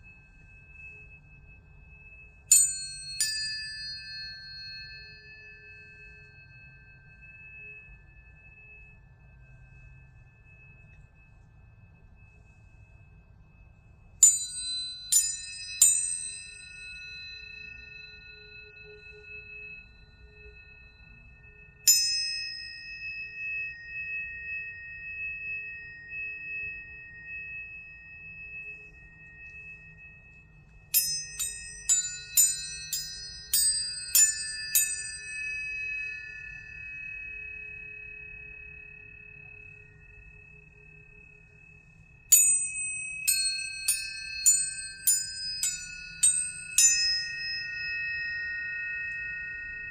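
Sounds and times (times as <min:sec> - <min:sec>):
tuning forks ringing: 0:00.0 - 0:49.9.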